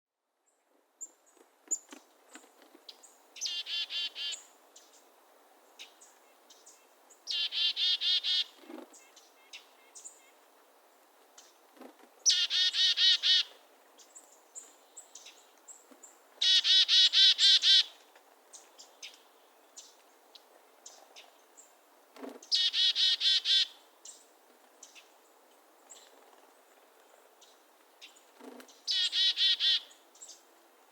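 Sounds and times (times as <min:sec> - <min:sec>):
faint bird chips and calls: 0:00.5 - 0:05.1, 0:05.8 - 0:10.4, 0:12.2 - 0:21.7, 0:22.4 - 0:30.5.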